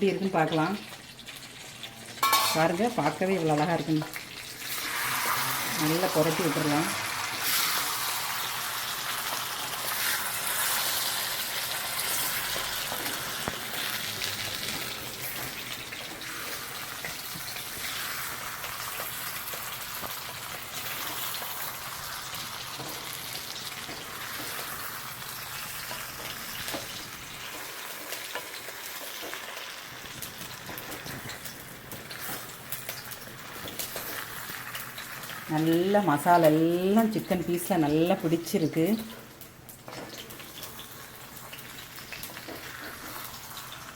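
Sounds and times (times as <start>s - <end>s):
chicken sizzling in oil: 0.0s - 43.9s
spoon scraping a pan: 2.2s - 3.2s.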